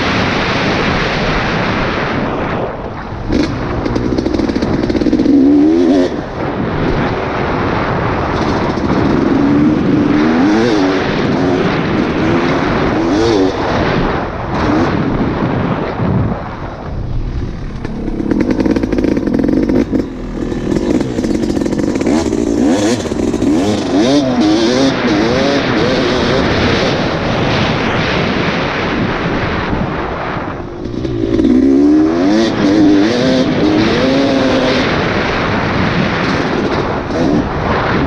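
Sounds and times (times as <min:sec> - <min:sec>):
wind noise on microphone: 0:00.0 - 0:38.0
off-road vehicle engine revving: 0:08.3 - 0:13.9, 0:17.0 - 0:27.1, 0:30.8 - 0:37.6.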